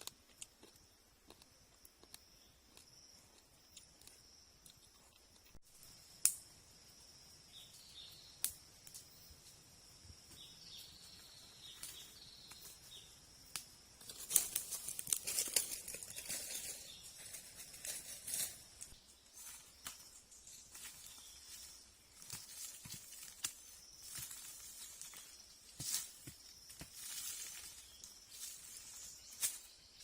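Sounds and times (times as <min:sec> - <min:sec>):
dry plant material crackling: 0:14.0 - 0:20.0.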